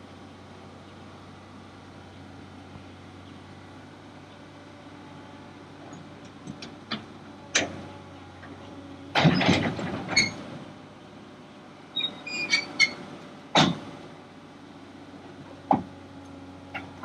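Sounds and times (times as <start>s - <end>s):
excavator diesel engine running: 0.0s - 17.0s
heavy steel clanks and knocks: 9.1s - 10.4s.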